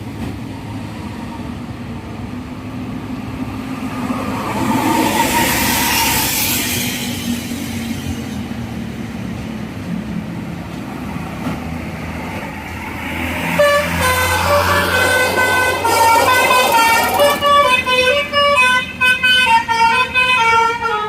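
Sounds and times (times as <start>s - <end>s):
buses rushing past: 0.0s - 21.0s
low engine drone: 12.9s - 17.9s
multi-tone horn tune: 13.4s - 21.0s.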